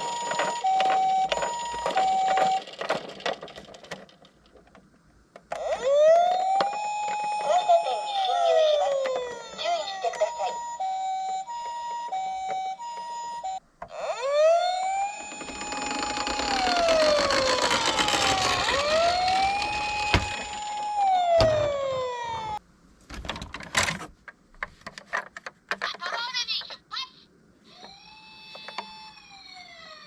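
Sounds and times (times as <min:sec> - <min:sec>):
two-tone ambulance siren: 0:00.0 - 0:02.6, 0:05.6 - 0:22.6, 0:27.8 - 0:30.0
wailing siren: 0:05.6 - 0:22.6, 0:27.8 - 0:30.0.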